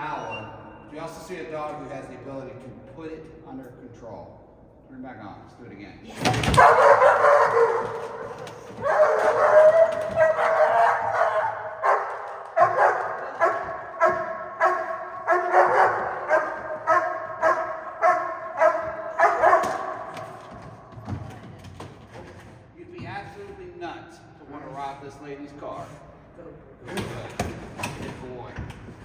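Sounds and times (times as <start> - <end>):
dog barking: 6.4 - 20.5.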